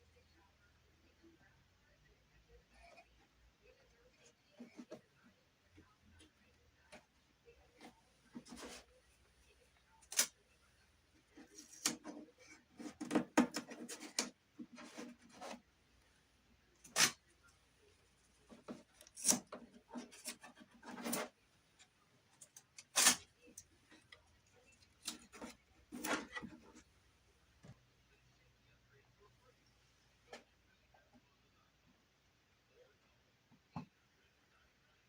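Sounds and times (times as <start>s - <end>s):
rubbing and scraping on wood: 11.2s - 15.7s, 18.3s - 21.4s.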